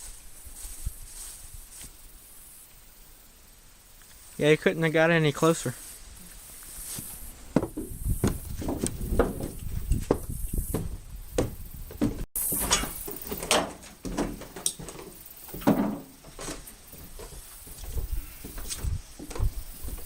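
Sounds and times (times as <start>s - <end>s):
wooden bumps and scrapes: 6.3s - 20.0s
knocks and thumps of handling: 7.0s - 20.0s.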